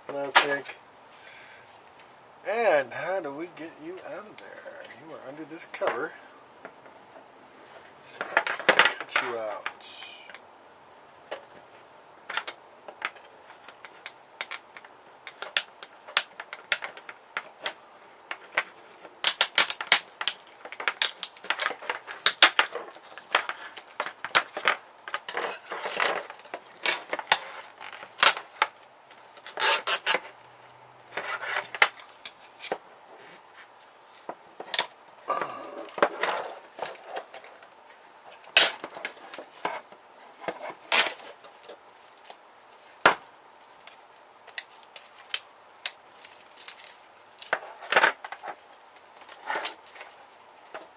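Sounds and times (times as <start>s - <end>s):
plastic parts clicking and snapping: 12.3s - 30.3s, 43.8s - 50.9s
loud plastic crack: 14.0s - 30.4s, 34.2s - 35.0s.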